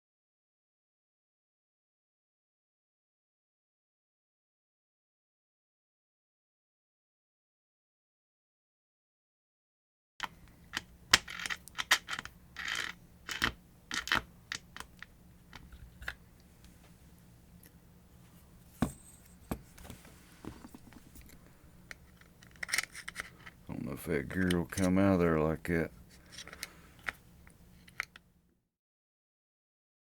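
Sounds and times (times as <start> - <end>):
metal parts clicking and scraping: 10.2 - 16.2, 20.7 - 23.6, 26.1 - 27.2, 27.8 - 28.2.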